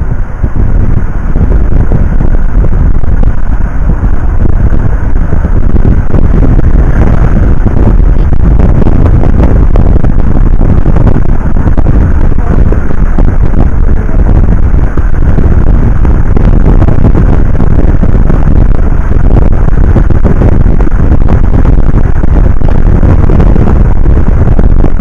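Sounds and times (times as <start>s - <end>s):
moving vehicle rumble: 0.0s - 25.0s
wind buffeting microphone: 0.0s - 25.0s.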